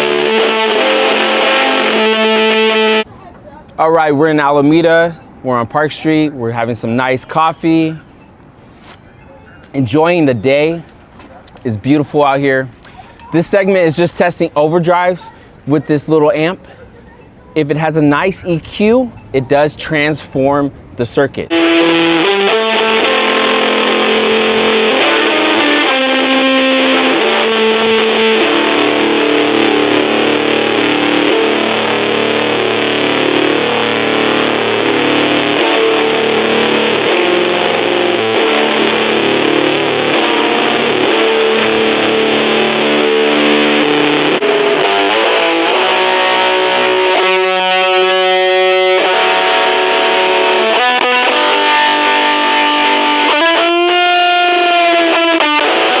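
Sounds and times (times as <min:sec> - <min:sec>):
distorted electric guitar: 0:00.0 - 0:03.1, 0:21.5 - 0:56.0.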